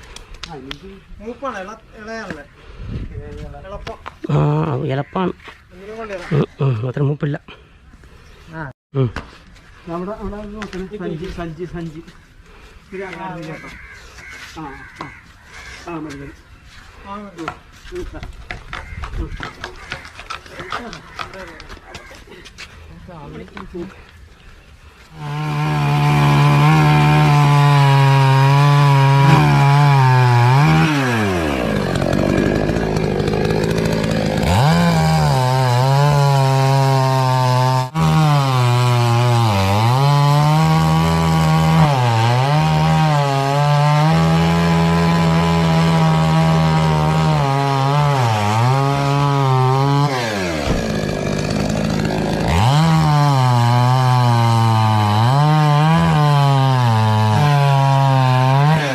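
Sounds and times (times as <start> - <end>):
chainsaw cutting wood: 25.1 - 58.9.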